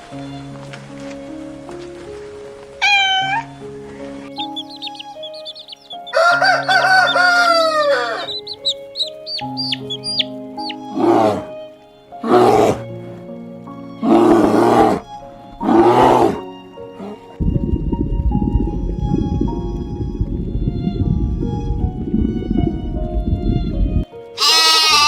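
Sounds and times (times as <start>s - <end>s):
background music: 0.0s - 25.0s
harsh chicken calls: 4.4s - 11.4s, 24.4s - 25.0s
rooster crowing: 6.0s - 8.5s.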